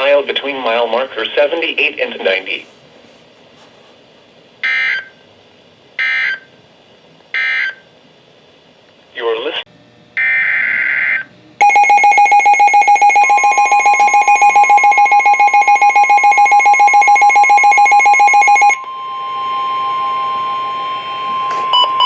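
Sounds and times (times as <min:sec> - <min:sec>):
rapidly pulsing electronic alarm: 0:04.6 - 0:05.2, 0:06.0 - 0:06.5, 0:07.4 - 0:07.8, 0:10.2 - 0:22.0
steady warning alarm tone: 0:04.6 - 0:05.2, 0:06.0 - 0:06.5, 0:07.4 - 0:07.8, 0:10.2 - 0:22.0.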